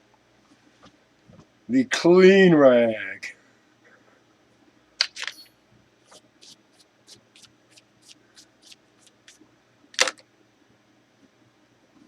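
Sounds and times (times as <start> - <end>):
cloth rag wiping: 6.1 - 9.4.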